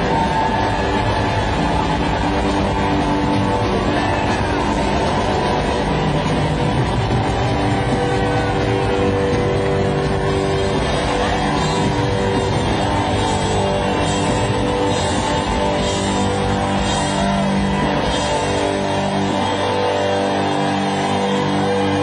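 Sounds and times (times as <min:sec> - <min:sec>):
drums: 0:00.0 - 0:22.0
electric guitar chords: 0:00.0 - 0:22.0.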